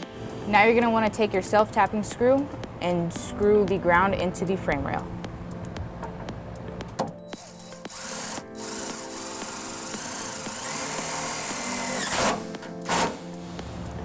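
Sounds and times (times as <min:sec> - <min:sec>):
power drill driving screw into steel: 0:07.4 - 0:13.2.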